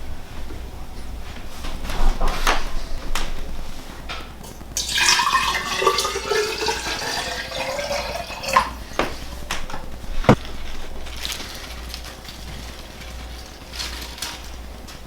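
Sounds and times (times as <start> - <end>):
water running and splashing: 4.4 - 15.0.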